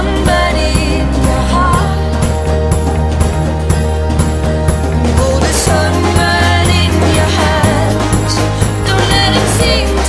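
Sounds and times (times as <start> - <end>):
song with bass and beat: 0.0 - 10.0.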